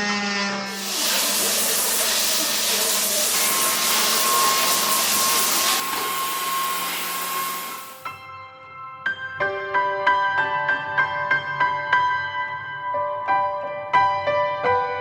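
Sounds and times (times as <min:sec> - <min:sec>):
machine blowing air with whine: 0:00.6 - 0:08.0.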